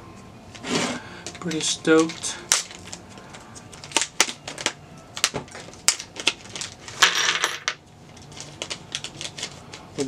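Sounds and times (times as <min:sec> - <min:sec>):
packaging crinkling: 0:01.3 - 0:07.0, 0:08.1 - 0:10.0.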